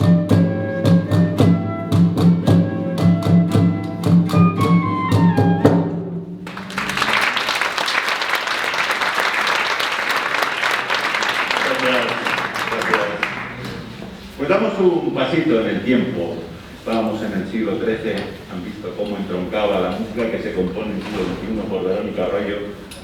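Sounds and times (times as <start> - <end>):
medieval-style ensemble music: 0.0 - 6.3
audience applause: 6.4 - 13.9.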